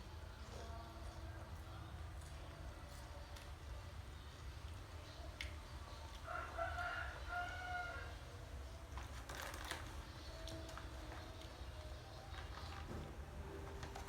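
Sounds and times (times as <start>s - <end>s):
rooster crowing: 6.3s - 8.2s.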